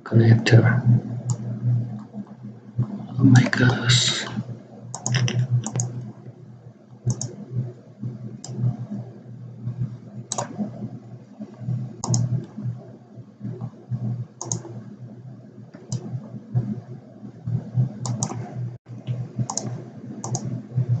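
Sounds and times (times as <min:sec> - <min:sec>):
steady low hum: 0:00.0 - 0:21.0
computer mouse clicking: 0:01.2 - 0:06.4, 0:07.0 - 0:07.8, 0:08.4 - 0:09.1, 0:09.7 - 0:12.7, 0:13.5 - 0:14.8, 0:15.7 - 0:16.8, 0:17.5 - 0:20.6.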